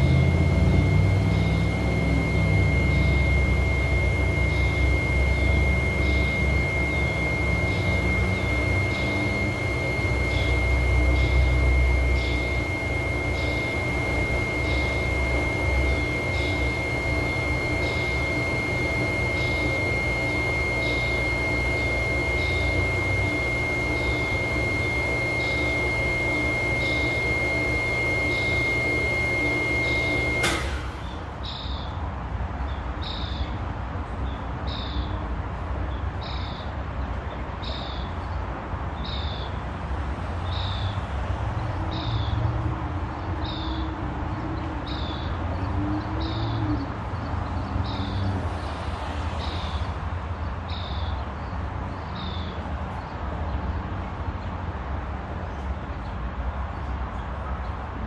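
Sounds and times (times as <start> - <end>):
thin high whine: 0.0 - 31.8
small bird chirping: 34.7 - 35.2.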